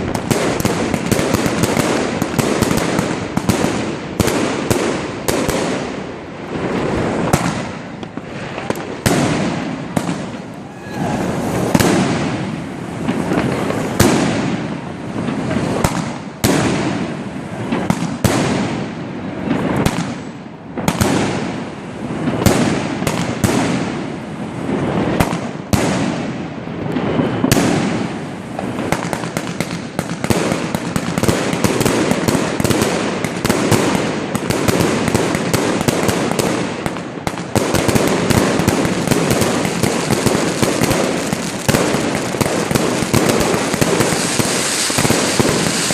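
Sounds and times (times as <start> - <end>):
fireworks bangs and crackles: 0.0 - 45.9.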